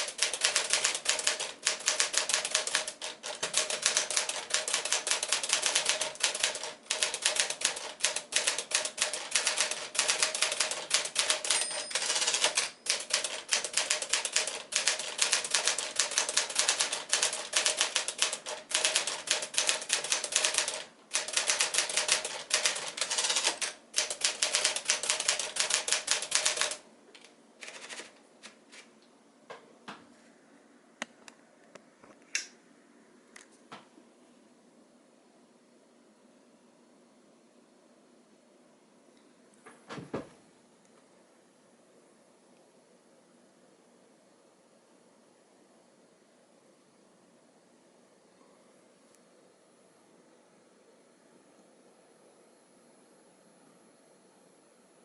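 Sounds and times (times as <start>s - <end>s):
manual typewriter typing: 0.0s - 28.2s.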